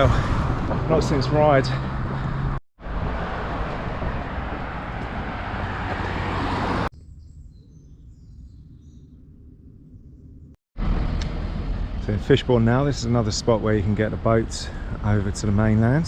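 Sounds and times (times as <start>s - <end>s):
loud outdoor noise: 10.8s - 15.8s.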